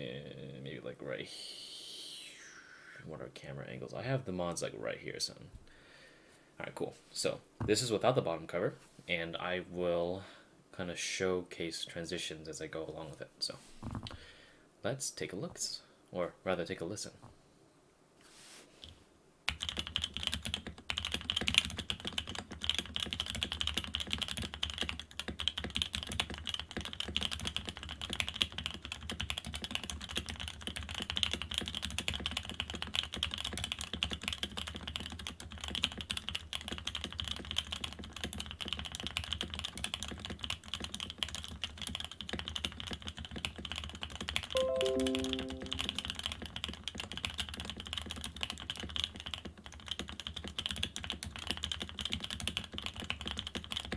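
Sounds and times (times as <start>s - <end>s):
mechanical keyboard typing: 19.5s - 53.9s.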